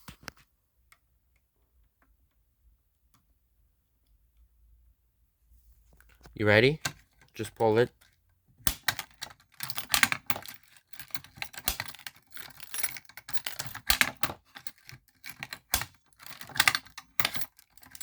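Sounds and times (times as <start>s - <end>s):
alarm handle clicks and rattles: 6.4s - 7.9s, 8.6s - 18.0s.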